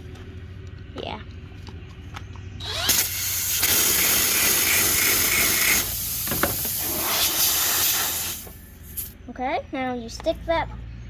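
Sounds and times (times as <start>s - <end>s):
air hissing from tire: 2.7s - 9.2s.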